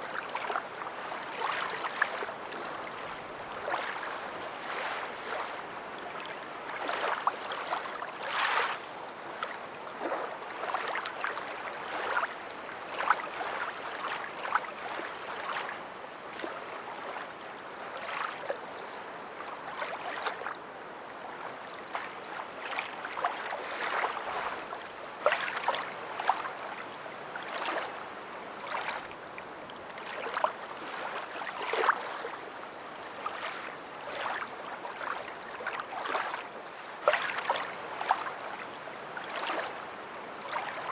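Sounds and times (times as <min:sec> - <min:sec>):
water splashing and gurgling: 0:00.0 - 0:08.8, 0:21.9 - 0:26.8, 0:27.4 - 0:28.0, 0:28.6 - 0:32.5, 0:33.2 - 0:40.9.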